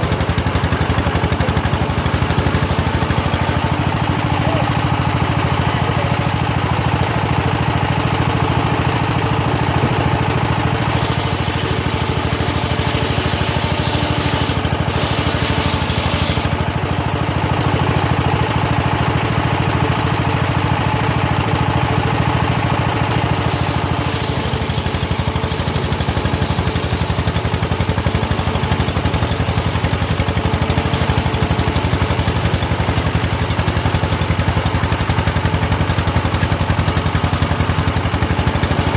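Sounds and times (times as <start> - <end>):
circular saw droning: 10.5 - 17.0, 23.1 - 34.0
saw blade ripping wood: 10.9 - 16.7, 23.1 - 30.1.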